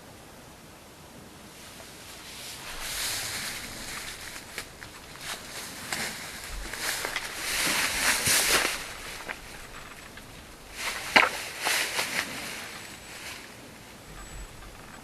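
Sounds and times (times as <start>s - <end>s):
footsteps rustling through brush: 1.6s - 15.0s
twigs snapping: 2.6s - 12.9s.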